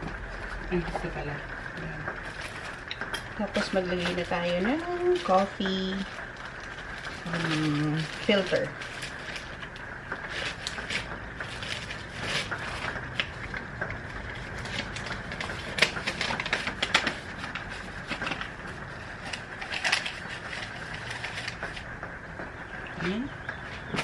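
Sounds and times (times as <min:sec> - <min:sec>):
paper crinkling: 0:00.0 - 0:22.0.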